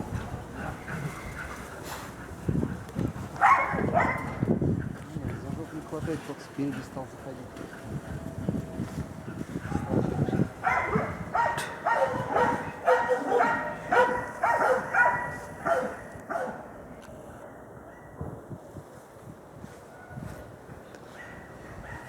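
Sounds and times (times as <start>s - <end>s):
dog barking: 3.4s - 4.4s, 9.7s - 16.7s, 17.9s - 18.2s, 21.1s - 22.0s.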